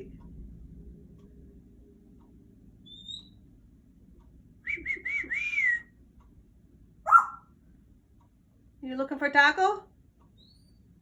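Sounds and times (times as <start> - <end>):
parrot whistling: 7.1 - 7.5.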